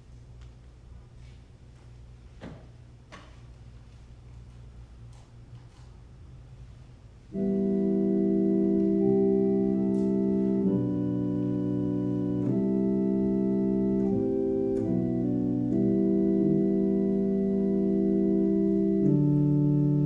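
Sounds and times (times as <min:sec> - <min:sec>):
organ playing slow chords: 0:07.2 - 0:20.0.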